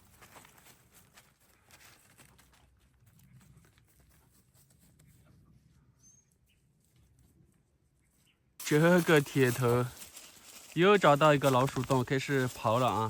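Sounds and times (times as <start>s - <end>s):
faint rustling: 0.0s - 13.0s
faint high chirp: 5.0s - 6.8s.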